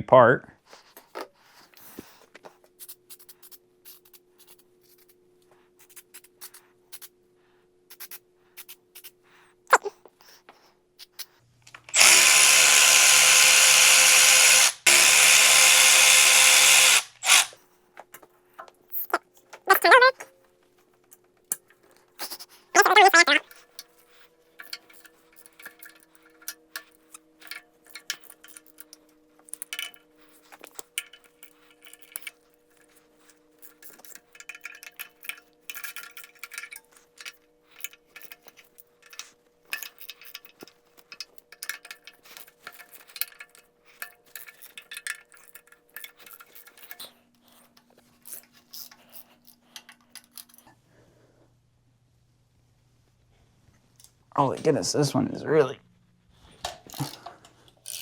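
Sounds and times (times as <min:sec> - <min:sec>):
hand tools clicking on metal: 0:33.6 - 0:47.2.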